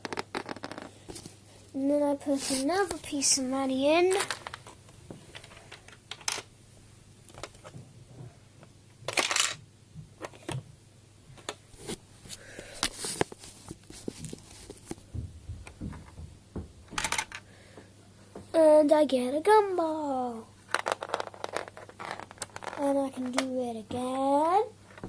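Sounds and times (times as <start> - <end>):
plastic toy bricks clicking and rattling: 0.0 - 0.9, 9.1 - 9.6, 20.7 - 23.6.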